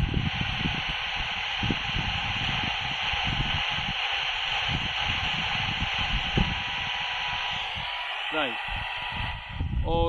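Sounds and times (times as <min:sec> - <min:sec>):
radio static hiss: 0:00.0 - 0:10.0.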